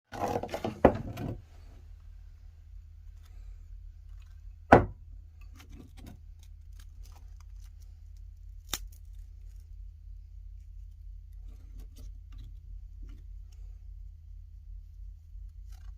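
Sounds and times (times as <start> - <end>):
steady low hum: 0.1 - 15.9.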